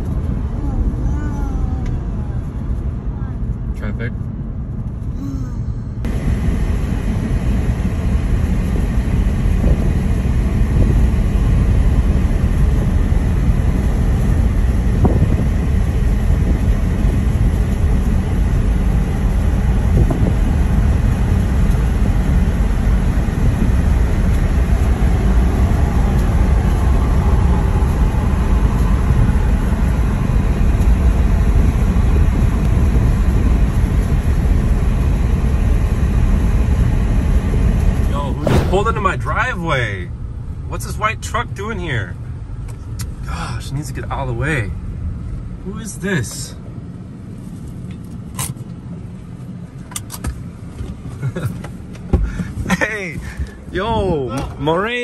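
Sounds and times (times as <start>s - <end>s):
car road and engine noise: 0.0s - 55.0s.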